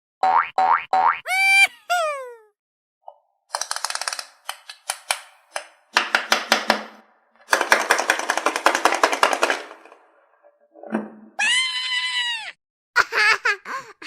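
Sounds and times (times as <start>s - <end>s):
rapid mechanical clicking: 7.4s - 9.8s.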